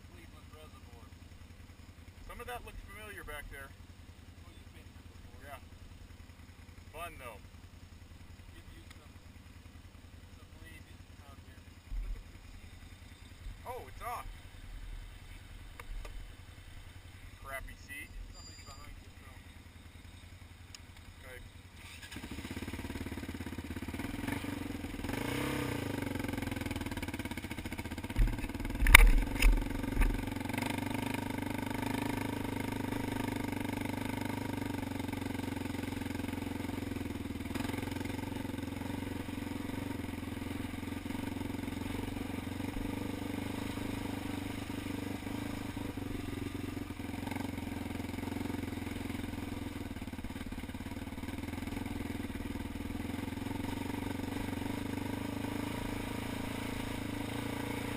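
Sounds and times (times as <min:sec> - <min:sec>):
atv engine running: 0:00.0 - 0:57.9
loud thumps: 0:28.1 - 0:30.2.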